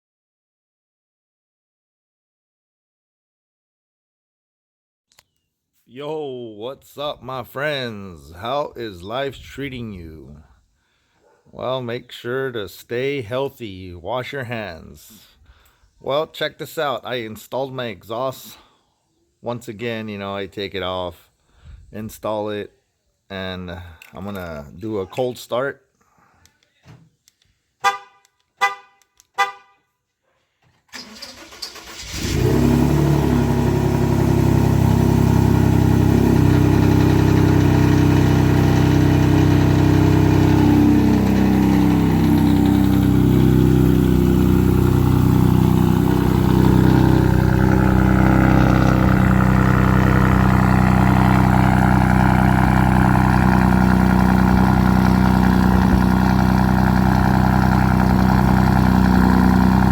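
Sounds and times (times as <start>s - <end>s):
car engine cranking and idling: 31.0s - 59.9s.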